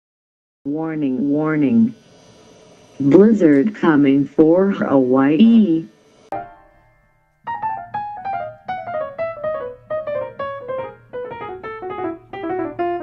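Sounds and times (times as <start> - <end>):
piano-like keyboard notes: 3.0 - 13.0.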